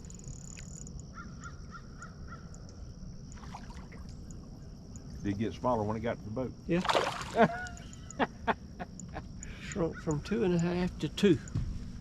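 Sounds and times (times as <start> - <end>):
distant bird calling: 0.0 - 3.0, 6.9 - 11.8
low outdoor background: 0.0 - 12.0.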